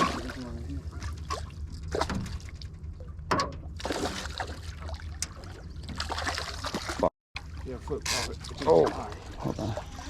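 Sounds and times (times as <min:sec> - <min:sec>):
fish splashing in water: 0:03.8 - 0:07.1.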